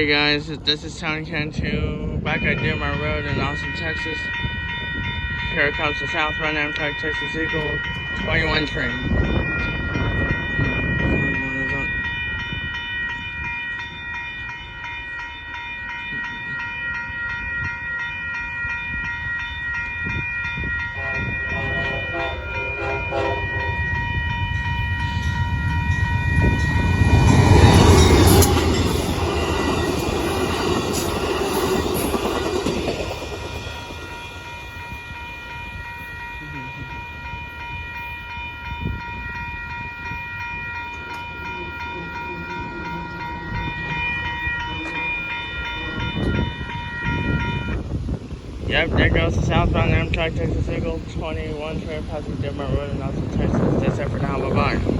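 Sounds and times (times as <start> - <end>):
crossing bell ringing: 0.0 - 54.9
train cars rumbling: 0.0 - 54.9
train passing: 0.0 - 54.9
train horn: 20.6 - 24.3, 40.9 - 47.8.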